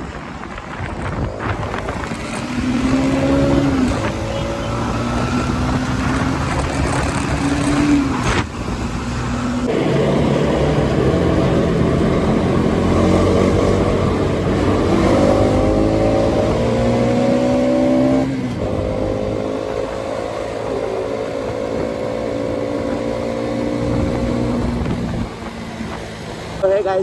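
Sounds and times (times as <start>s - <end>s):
motorcycle engine accelerating: 0.0s - 26.6s.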